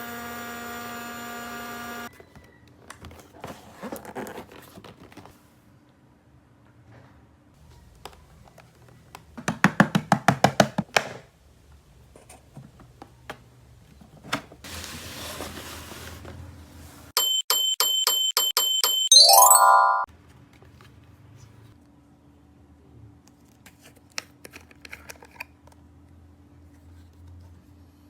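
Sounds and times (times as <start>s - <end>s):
rising electronic jingle: 19.1s - 20.1s.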